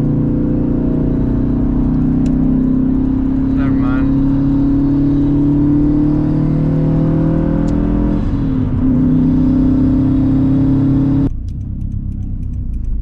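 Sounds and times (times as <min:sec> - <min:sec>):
car engine accelerating: 0:00.0 - 0:13.0.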